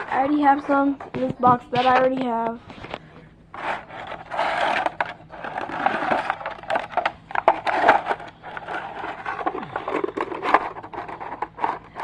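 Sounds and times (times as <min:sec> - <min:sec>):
packaging crinkling and rustling: 0:03.6 - 0:12.0
toys clicking and knocking: 0:04.3 - 0:12.0.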